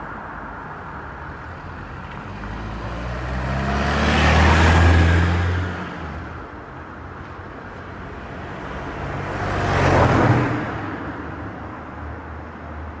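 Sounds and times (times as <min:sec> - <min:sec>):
motor vehicle passing by: 0:02.2 - 0:06.2.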